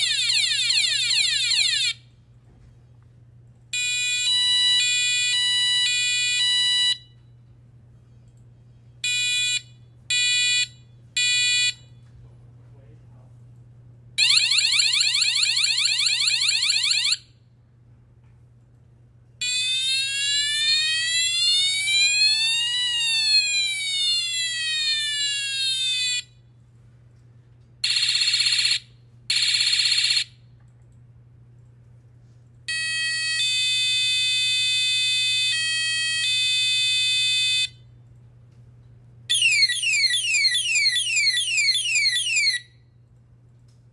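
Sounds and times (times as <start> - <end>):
rising and falling siren: 0.0 - 2.0, 14.2 - 17.2, 19.4 - 26.3, 39.3 - 42.7.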